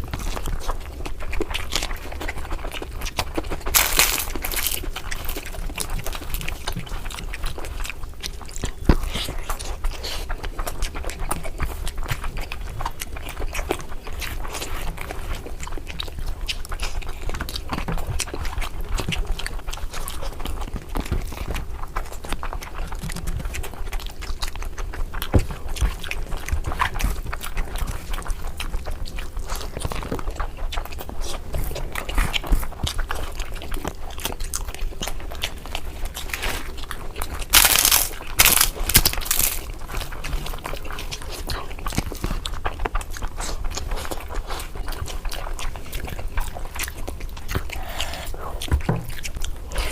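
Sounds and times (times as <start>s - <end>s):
low steady hum: 0.0s - 24.1s
mouth clicks and smacks: 0.0s - 49.9s
person chewing food: 0.0s - 49.9s.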